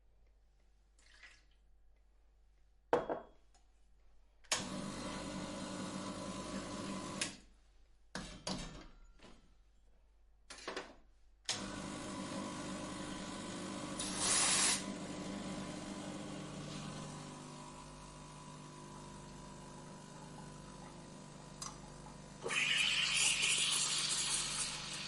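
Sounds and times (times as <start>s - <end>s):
coffee grinder motor grinding: 11.7s - 21.6s.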